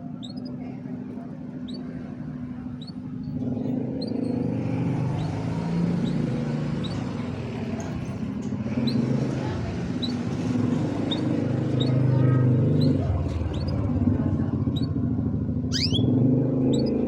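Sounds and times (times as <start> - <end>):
canary chirping: 0.0 - 17.0.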